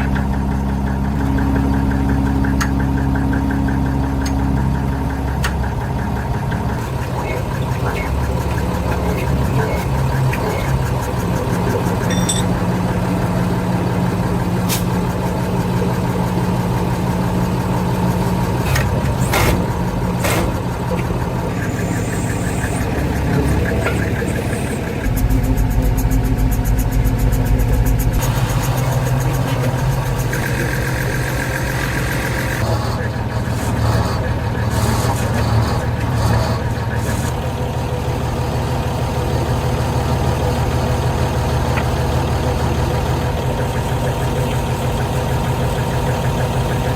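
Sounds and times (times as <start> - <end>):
diesel engine running: 0.0 - 46.9.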